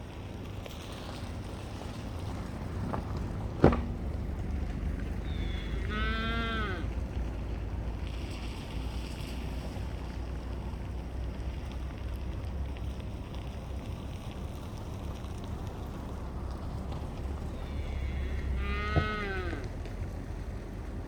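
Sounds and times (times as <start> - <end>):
low outdoor rumble: 0.0 - 21.0
drawn-out animal call: 2.2 - 9.9, 16.2 - 21.0.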